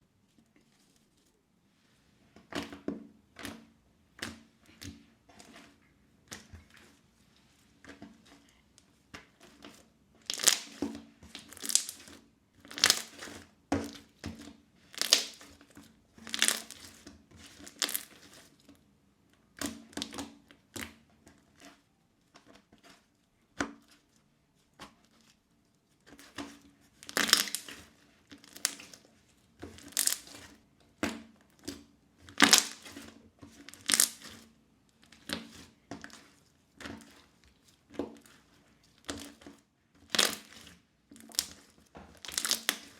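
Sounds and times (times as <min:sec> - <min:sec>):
crunchy slime squished by hand: 0:09.2 - 0:18.6, 0:26.1 - 0:30.6, 0:32.3 - 0:34.4, 0:35.0 - 0:42.9.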